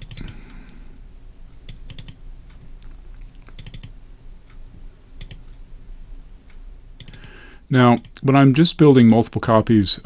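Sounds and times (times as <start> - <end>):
keyboard and mouse clicks: 0.0 - 0.4, 1.6 - 2.2, 2.8 - 4.0, 5.2 - 5.6, 7.0 - 7.3
faint low hum: 0.0 - 10.0.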